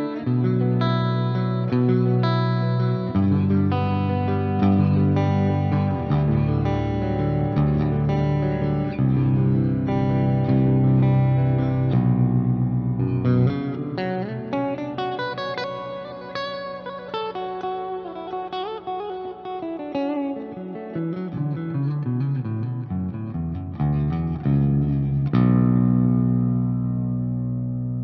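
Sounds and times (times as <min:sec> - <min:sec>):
low guitar chord ringing: 0:00.0 - 0:21.6
electric guitar single notes: 0:00.0 - 0:28.0.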